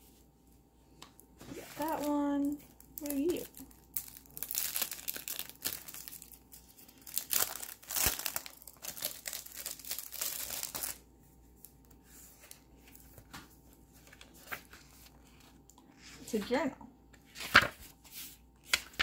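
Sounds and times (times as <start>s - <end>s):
wrapping crinkling: 1.5s - 13.3s.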